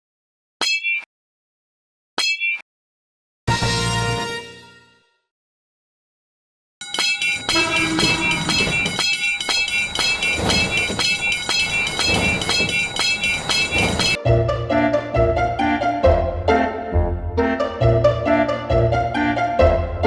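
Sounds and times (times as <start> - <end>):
passing train rumble: 6.8 - 14.2
railroad crossing alarm ringing: 6.8 - 14.2.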